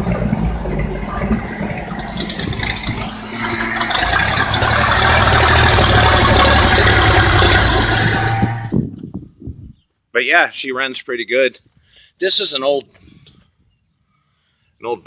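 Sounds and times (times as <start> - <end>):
engine running: 0.0 - 8.8
mechanical clatter: 0.0 - 8.8.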